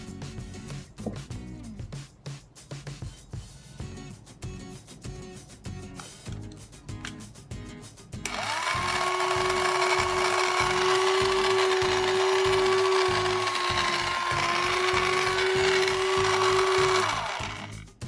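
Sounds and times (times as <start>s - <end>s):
background music: 0.0s - 18.0s
toy appliance whirring: 8.2s - 18.0s.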